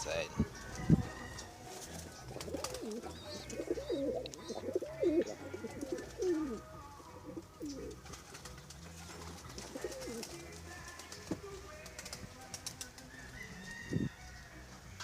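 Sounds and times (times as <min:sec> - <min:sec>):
pigeons cooing: 0:00.6 - 0:10.5.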